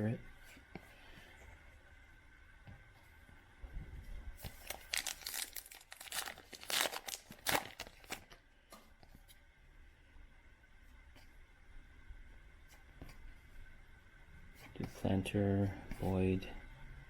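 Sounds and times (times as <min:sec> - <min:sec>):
cards and packaging crinkling: 0:04.4 - 0:08.4.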